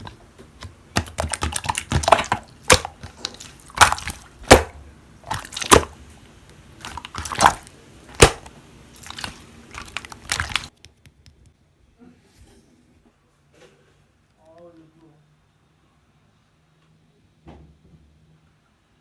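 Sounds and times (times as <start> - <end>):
slime squeezed popping: 0.9 - 6.0, 6.8 - 10.8.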